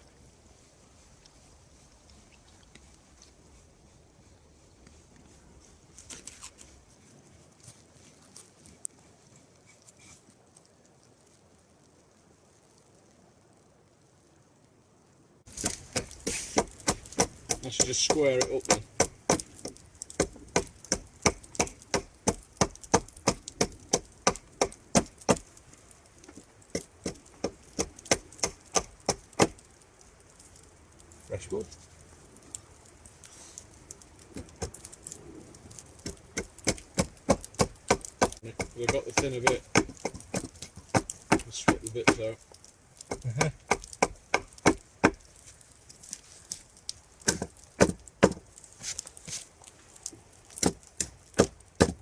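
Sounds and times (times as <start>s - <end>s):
axe chopping into wood: 15.5s - 25.4s, 26.7s - 29.6s, 36.0s - 42.3s, 43.1s - 45.2s, 47.2s - 48.4s, 50.5s - 52.0s.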